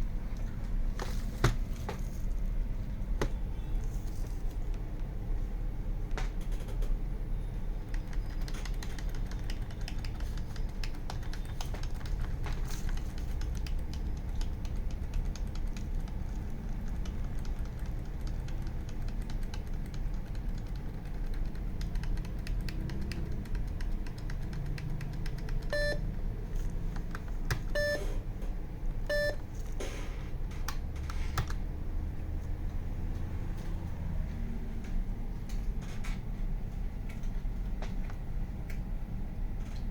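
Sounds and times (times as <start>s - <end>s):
steady low hum: 0.0s - 39.9s
keyboard clicks and taps: 7.9s - 26.0s
short electronic beeps: 25.7s - 26.1s, 27.8s - 28.1s, 29.1s - 29.4s.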